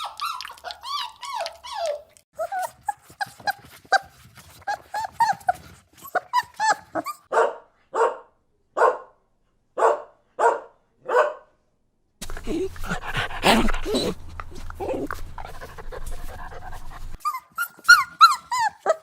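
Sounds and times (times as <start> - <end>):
puppy yipping: 0.0 - 8.2, 14.8 - 19.0
puppy barking: 6.1 - 9.2, 9.8 - 11.6.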